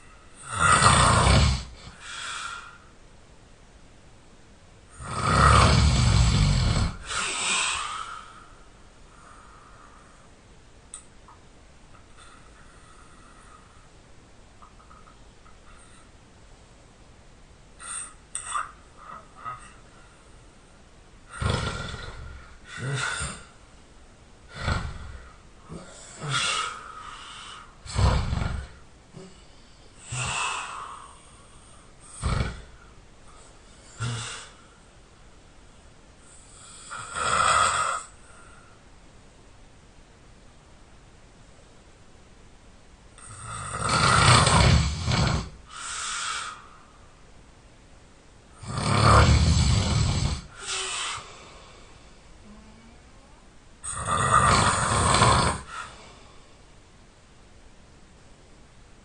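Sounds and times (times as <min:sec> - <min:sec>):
person snoring: 0:00.0 - 0:02.8, 0:04.9 - 0:08.5, 0:21.3 - 0:23.6, 0:24.5 - 0:34.7, 0:36.3 - 0:38.7, 0:43.2 - 0:46.8, 0:48.6 - 0:53.0, 0:53.8 - 0:56.4.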